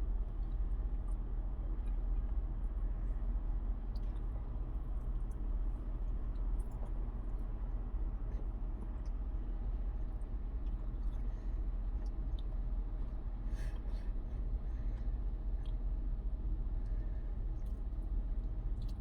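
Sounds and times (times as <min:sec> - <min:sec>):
low room hum: 0:00.0 - 0:19.0.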